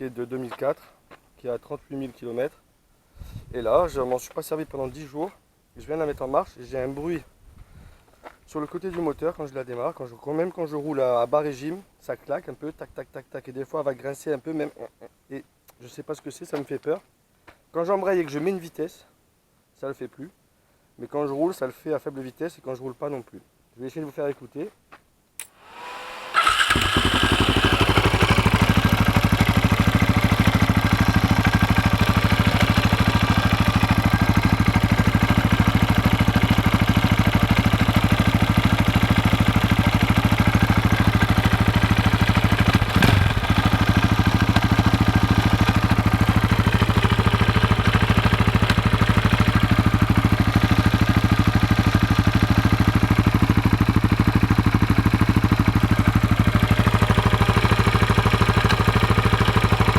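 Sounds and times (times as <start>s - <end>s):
engine clacking noise: 25.7s - 29.6s
motorcycle engine idling: 25.7s - 59.9s.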